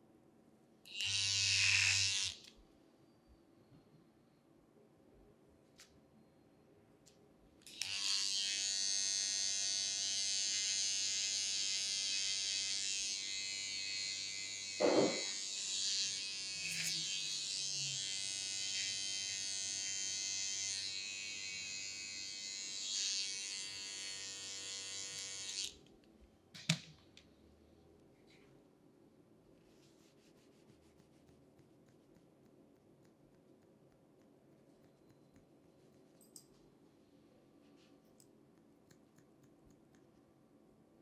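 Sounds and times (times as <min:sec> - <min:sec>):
electric hair clippers buzzing: 0:00.9 - 0:02.5, 0:07.7 - 0:25.8
short knock: 0:14.8 - 0:15.2.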